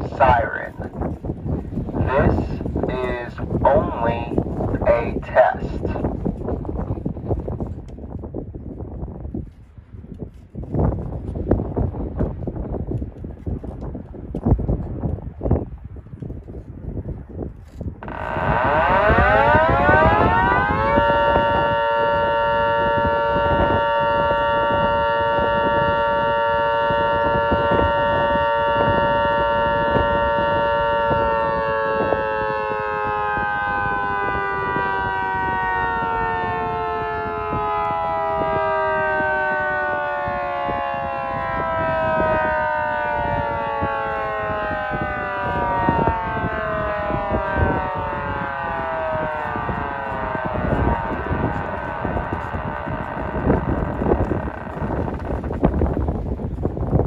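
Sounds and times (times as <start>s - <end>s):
two-tone siren wail: 0.0s - 0.9s, 1.9s - 6.1s, 17.7s - 57.0s
wind gusts on microphone: 0.0s - 57.0s.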